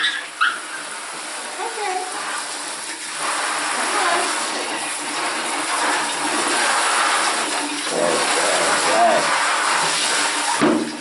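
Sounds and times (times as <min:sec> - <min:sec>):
shower sprayer hissing: 0:00.0 - 0:11.0.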